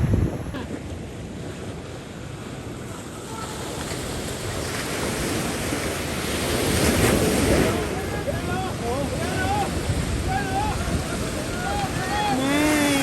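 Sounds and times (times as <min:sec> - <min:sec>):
wind buffeting microphone: 0:00.0 - 0:01.9, 0:04.0 - 0:13.0
ocean surf washing in: 0:00.0 - 0:13.0.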